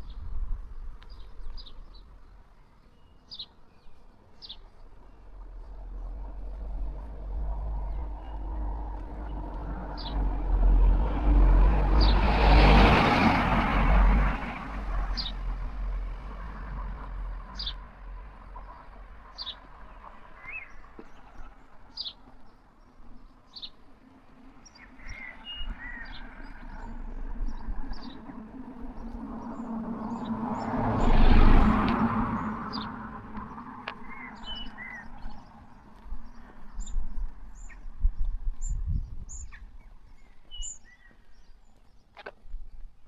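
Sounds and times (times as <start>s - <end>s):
vehicle passing: 4.8s - 22.1s, 24.0s - 37.7s.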